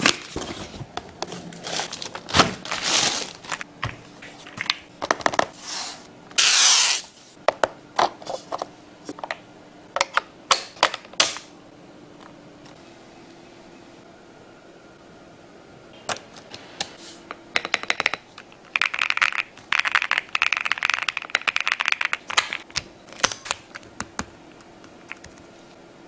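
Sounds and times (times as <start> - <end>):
packaging rustling and scraping: 0.0 - 4.7.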